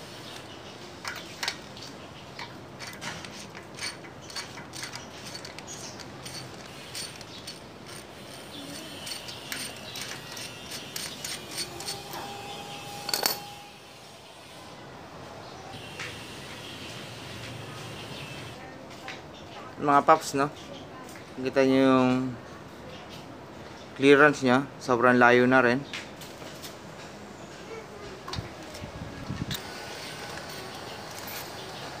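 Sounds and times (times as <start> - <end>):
hand tools clicking on metal: 2.3 - 12.2, 29.5 - 31.9.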